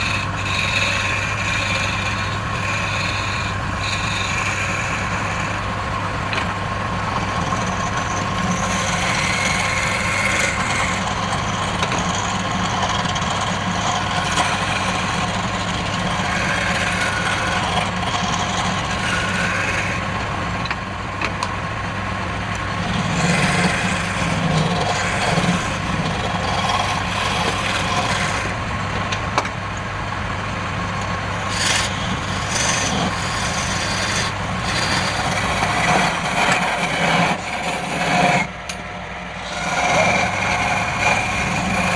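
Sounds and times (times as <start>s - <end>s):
tool scraping spinning wood: 0.0s - 41.9s
wood lathe motor hum: 0.0s - 41.9s.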